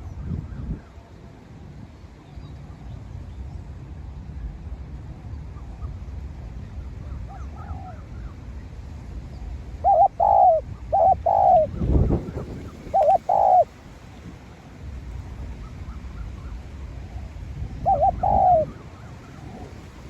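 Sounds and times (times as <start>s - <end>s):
dove cooing: 9.8s - 11.8s, 12.9s - 13.7s, 17.8s - 18.8s.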